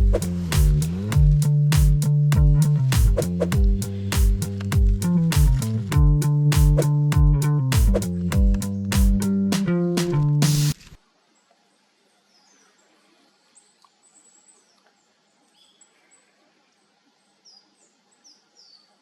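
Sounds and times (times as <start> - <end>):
plucked guitar and bass music: 0.0 - 10.8
faint small birds chirping: 10.9 - 19.0.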